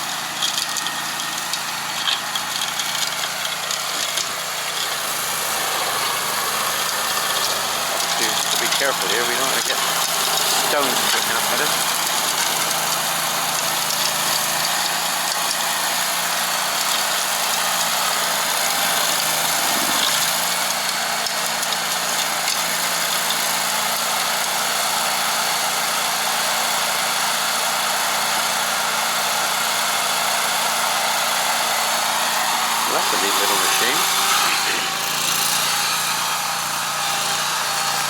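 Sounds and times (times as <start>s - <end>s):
stump grinder grinding stump: 0.0s - 38.0s.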